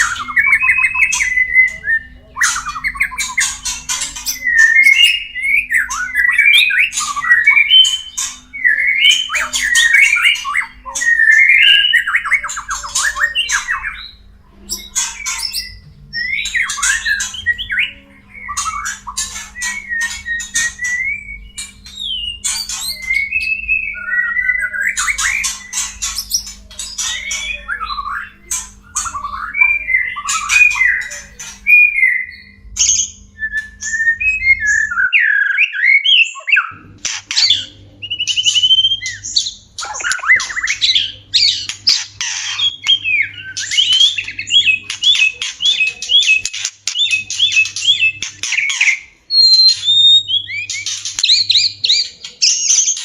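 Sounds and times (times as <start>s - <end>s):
low steady hum: 0.0s - 35.0s
birds chattering and whistling: 0.0s - 53.0s
rapid repeated bird notes: 0.0s - 53.0s.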